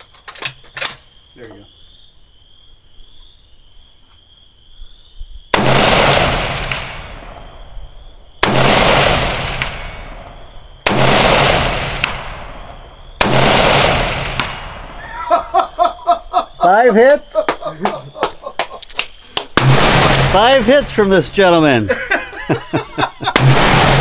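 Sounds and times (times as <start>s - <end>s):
rifle shots with echo: 5.5s - 7.8s, 8.4s - 15.0s, 19.5s - 21.8s, 23.2s - 24.0s.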